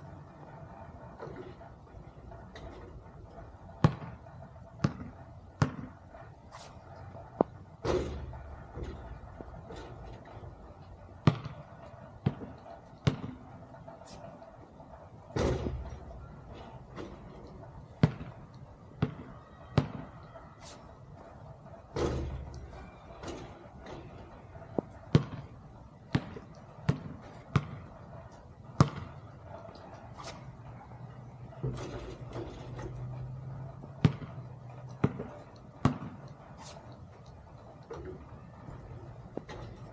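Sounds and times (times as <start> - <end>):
basketball bouncing: 3.6 - 14.3, 15.0 - 21.3, 21.9 - 33.3, 33.9 - 36.8.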